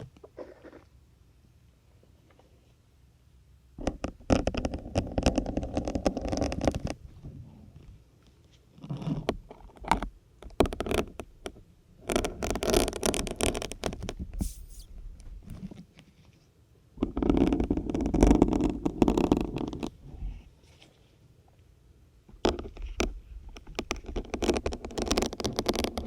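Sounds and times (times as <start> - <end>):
syringe scraping into sponge: 14.4 - 14.9.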